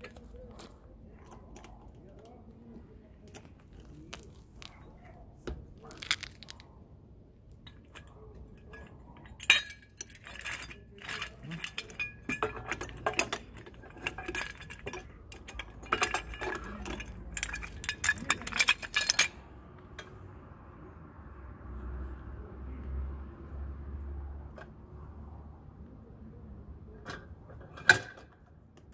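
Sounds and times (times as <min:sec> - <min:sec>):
metal tools clinking and clattering: 0:07.6 - 0:20.2, 0:27.0 - 0:28.5.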